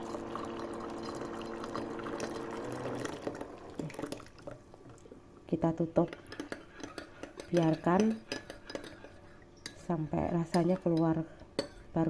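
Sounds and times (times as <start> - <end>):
hot water pouring into cup: 0.0 - 5.0.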